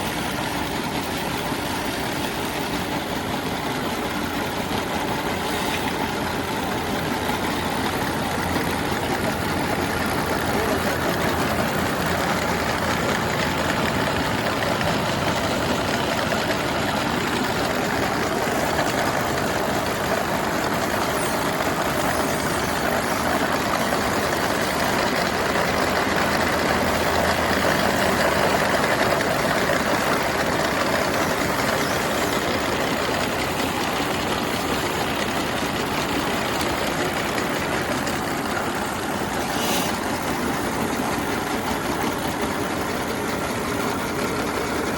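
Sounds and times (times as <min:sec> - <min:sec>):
feed-processing machine running: 0:00.0 - 0:44.9.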